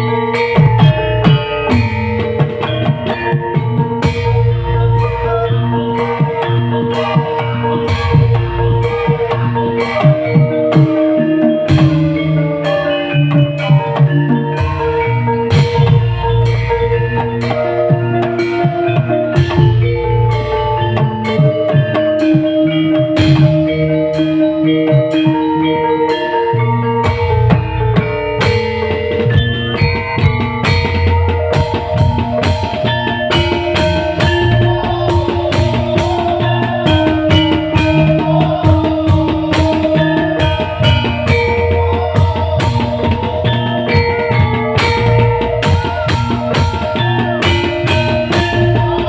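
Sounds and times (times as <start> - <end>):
live band music: 0.0 - 49.0
mallet percussion: 0.0 - 49.0
dense drum beat: 13.6 - 18.3, 27.0 - 49.0.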